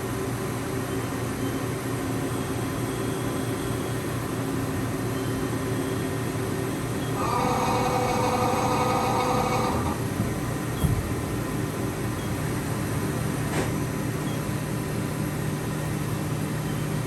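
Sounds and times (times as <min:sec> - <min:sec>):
machining center hum: 0:05.2 - 0:17.0
high-pitched machine whine: 0:07.2 - 0:10.0.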